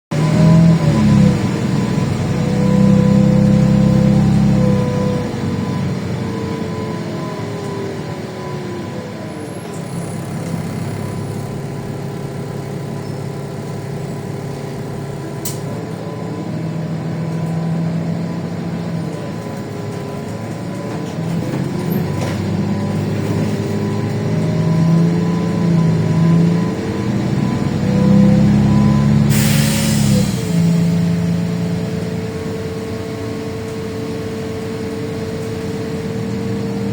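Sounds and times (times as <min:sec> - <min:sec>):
bus engine accelerating: 0:00.1 - 0:36.9
compressed air hiss: 0:29.3 - 0:30.3.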